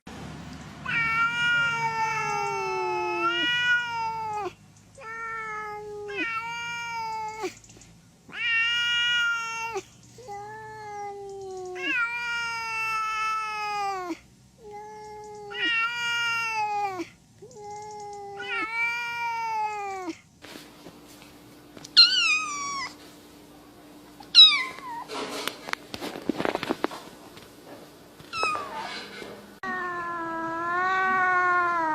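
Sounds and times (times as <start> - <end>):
cat yowling: 0.8 - 7.6, 8.3 - 20.2, 22.0 - 23.0, 24.3 - 25.1, 29.6 - 31.9.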